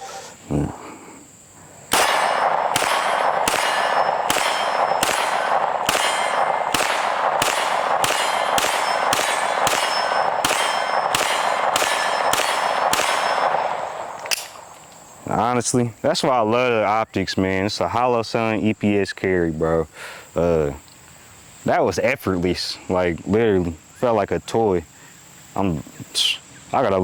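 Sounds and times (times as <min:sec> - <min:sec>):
metallic ringing: 0:01.9 - 0:14.7
pistol shots: 0:01.9 - 0:15.1.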